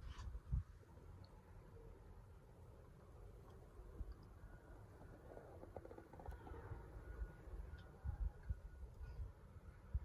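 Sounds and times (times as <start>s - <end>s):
wind buffeting microphone: 3.9s - 10.0s.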